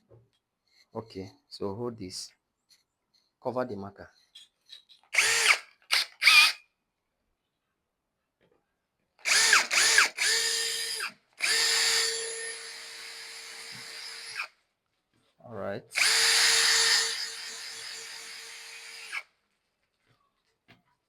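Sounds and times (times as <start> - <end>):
power drill revving: 5.2 - 6.6, 9.2 - 14.5, 16.0 - 19.2.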